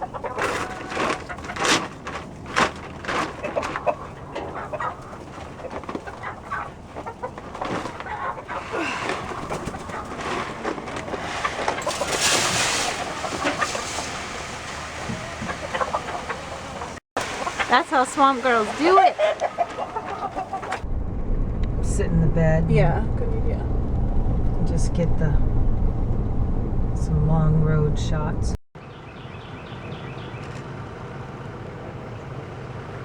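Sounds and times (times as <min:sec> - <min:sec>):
chickens clucking: 0:00.0 - 0:20.9.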